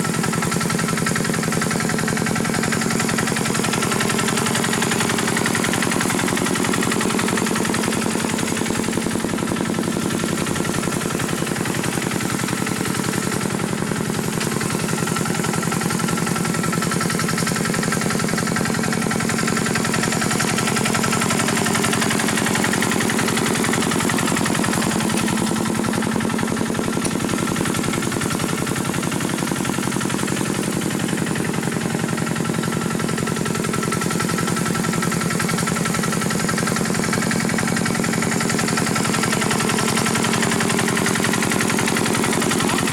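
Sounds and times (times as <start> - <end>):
tractor engine chugging: 0.0 - 42.9.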